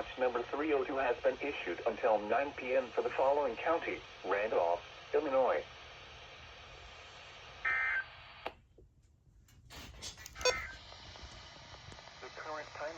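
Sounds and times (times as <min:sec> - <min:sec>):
radio receiver hissing: 0:00.0 - 0:08.6, 0:09.7 - 0:12.9
digital data tones: 0:10.4 - 0:10.8.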